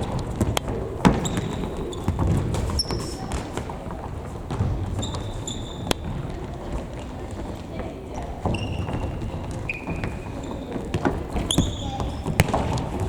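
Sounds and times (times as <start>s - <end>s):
ball kicked and bouncing: 0.0s - 7.0s, 8.4s - 13.0s
players' voices: 0.0s - 13.0s
shoes squeaking on floor: 0.0s - 13.0s.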